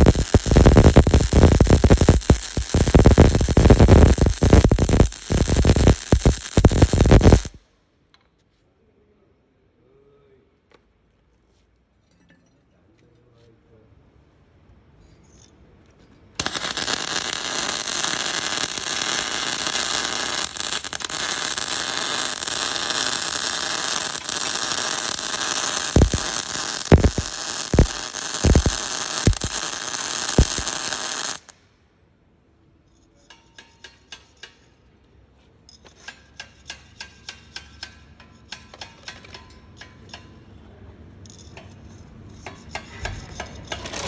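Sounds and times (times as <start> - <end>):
sharp metallic ticks: 0.0 - 7.6, 16.4 - 31.5
welding arc crackling: 0.0 - 7.6, 16.4 - 31.5.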